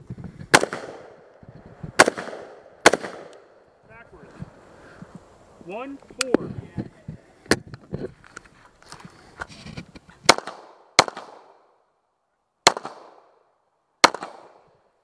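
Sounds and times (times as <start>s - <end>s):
rifle shots with echo: 0.5s - 3.6s, 10.3s - 11.7s, 12.6s - 13.4s, 14.0s - 14.7s.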